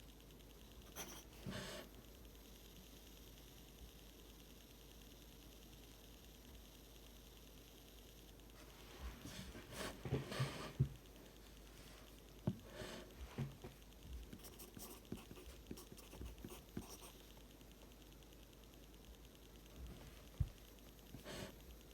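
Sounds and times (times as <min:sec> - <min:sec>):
pencil writing on paper: 0:00.9 - 0:01.9, 0:14.2 - 0:17.2, 0:21.2 - 0:21.6.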